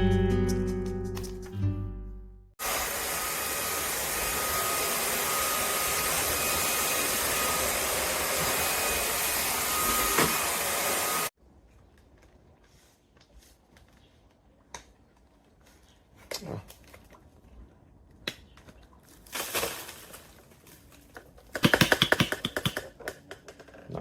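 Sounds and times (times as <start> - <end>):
cordless vacuum running: 2.6 - 11.3.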